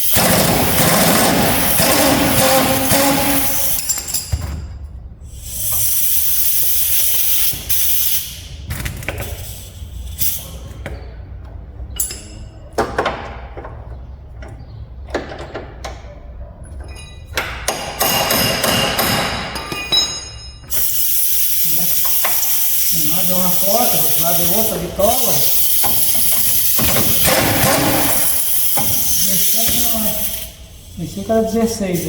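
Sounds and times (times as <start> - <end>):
metal tools knocking on steel: 12.0 - 13.8, 16.8 - 20.7
hissing noise: 20.7 - 32.0.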